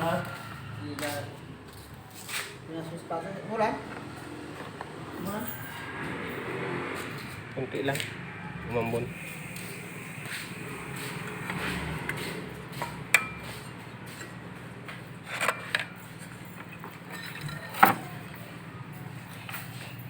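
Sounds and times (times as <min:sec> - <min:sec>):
objects knocking and clinking: 0:15.2 - 0:18.6.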